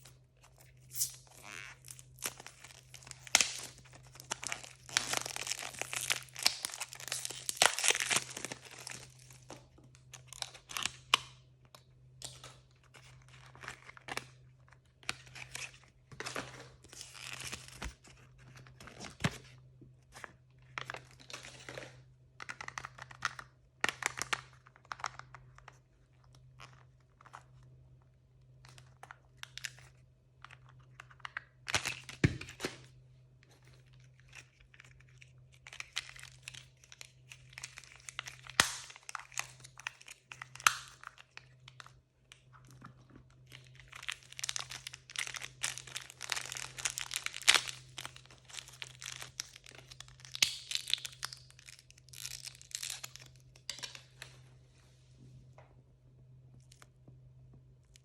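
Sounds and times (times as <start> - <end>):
packaging torn and crinkled: 0.5 - 11.3, 33.8 - 42.4, 43.3 - 54.2.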